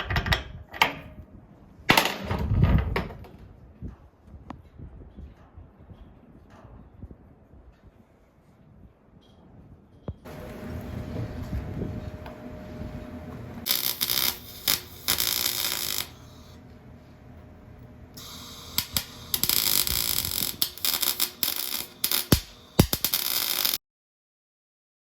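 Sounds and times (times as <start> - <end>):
arc welding crackling hiss: 10.3 - 11.8, 13.6 - 16.6, 18.2 - 23.8.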